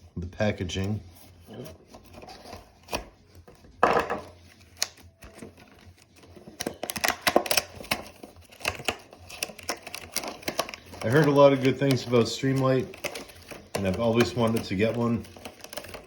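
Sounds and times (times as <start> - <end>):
plastic packaging crackling: 4.3 - 16.0
plastic rasp: 5.3 - 16.0.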